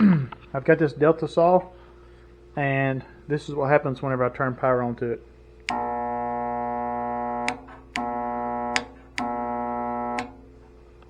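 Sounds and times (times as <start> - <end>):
stalled electric motor humming: 5.7 - 10.6
sharp switch click: 7.5 - 8.1, 8.8 - 9.4, 10.2 - 10.4.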